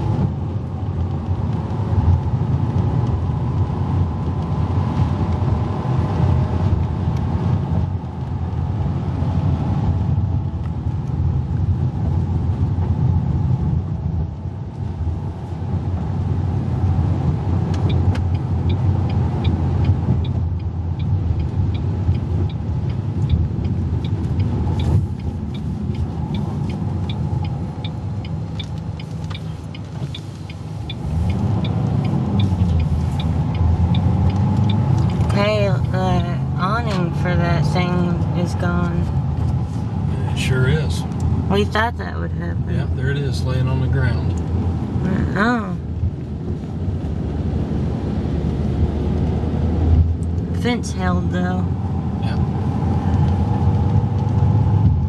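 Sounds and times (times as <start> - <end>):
car road and engine rumble: 0.0 - 55.0
light ticking: 17.7 - 36.0.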